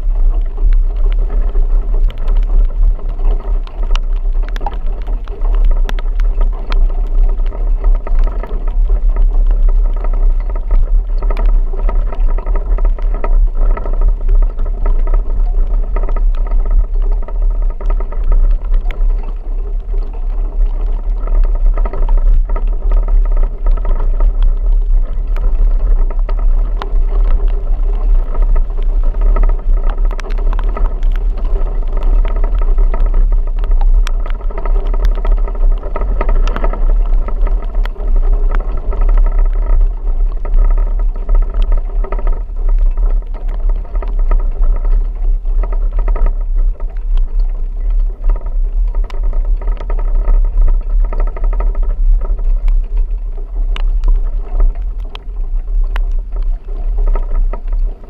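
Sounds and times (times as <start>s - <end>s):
heavy rain rumble: 0.0s - 58.0s
sharp ticks: 0.0s - 58.0s.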